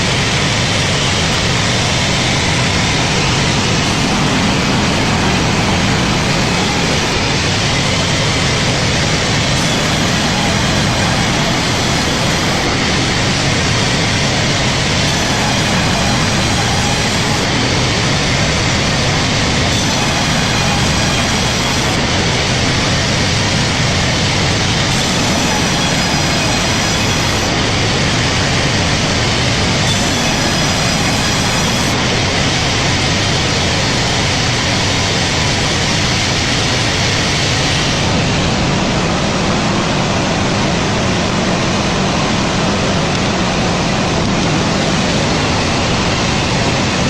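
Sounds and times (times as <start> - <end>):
faint high-pitched whines: 0.0 - 38.5
machine rushing hiss: 0.3 - 32.5.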